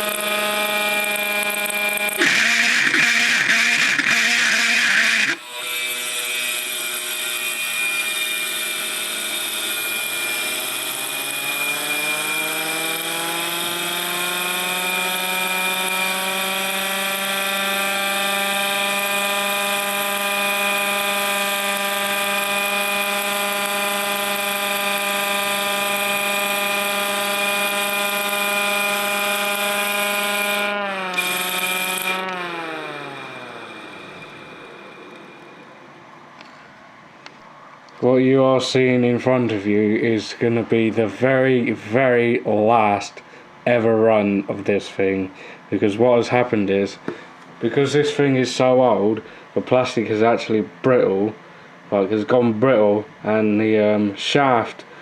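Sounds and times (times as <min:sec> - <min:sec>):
siren rotor rattling: 0:00.0 - 0:05.5, 0:09.2 - 0:36.2
air raid siren winding up: 0:00.0 - 0:36.5.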